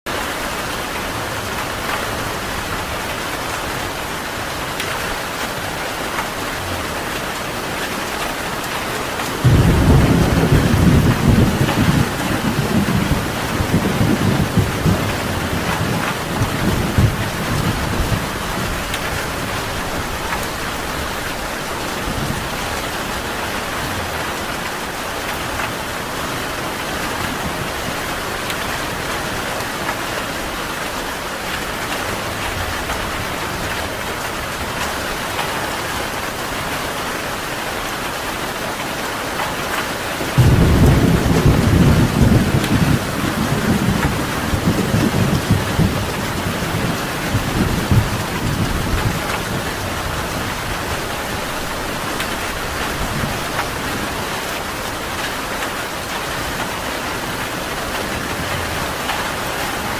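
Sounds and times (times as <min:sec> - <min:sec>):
heavy rain: 0:00.0 - 0:59.9
thunder rumbling: 0:08.5 - 0:24.5, 0:40.4 - 0:54.9.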